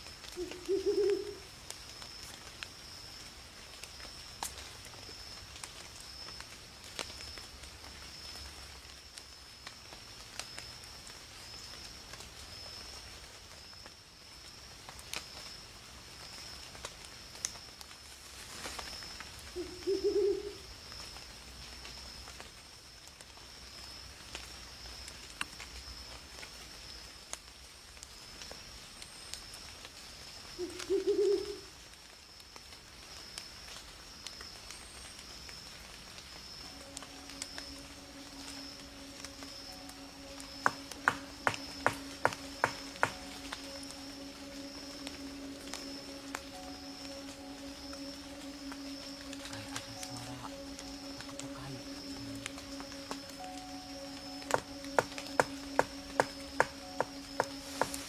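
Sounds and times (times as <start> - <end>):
owl hooting: 0.2 - 1.5, 19.5 - 20.7, 30.6 - 31.7, 36.7 - 58.0
high-pitched tone: 36.6 - 58.0.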